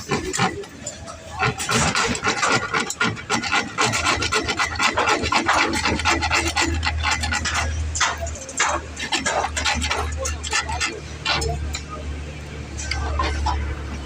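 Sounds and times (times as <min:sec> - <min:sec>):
hand tool rasping: 0:01.4 - 0:12.0.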